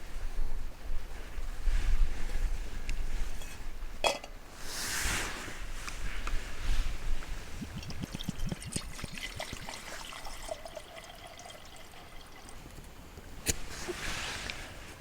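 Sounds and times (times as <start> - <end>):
small water splashes: 7.6 - 12.6
water pouring and trickling: 7.6 - 12.9.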